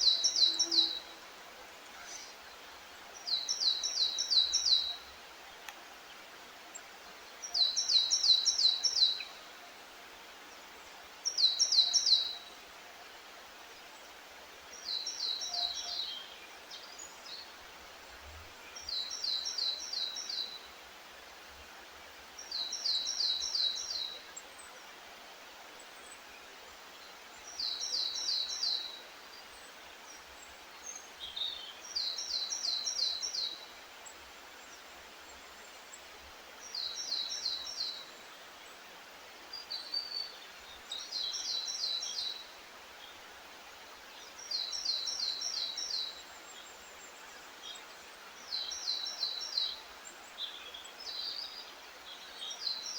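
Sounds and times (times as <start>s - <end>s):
songbird singing repeated phrase: 0.0s - 1.2s, 3.1s - 5.7s, 14.8s - 17.6s, 26.4s - 35.4s, 36.6s - 38.8s, 39.5s - 43.2s, 44.1s - 52.9s
steady hiss: 0.0s - 52.9s.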